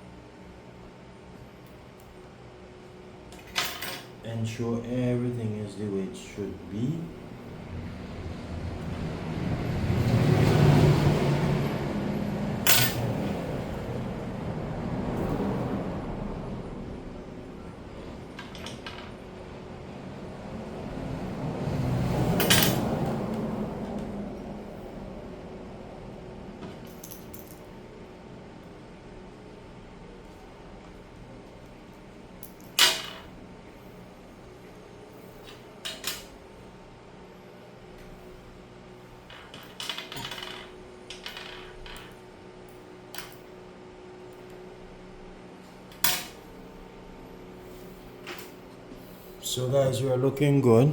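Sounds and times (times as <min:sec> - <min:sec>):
vehicle engine hum passing: 0:07.2 - 0:18.2, 0:19.2 - 0:26.6.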